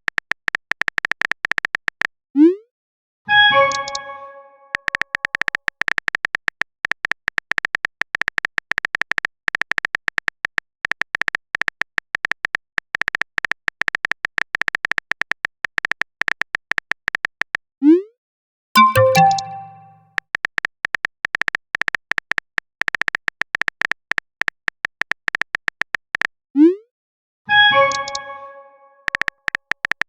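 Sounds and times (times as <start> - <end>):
phone keyboard typing clicks: 18.8 - 20.0, 29.1 - 30.0.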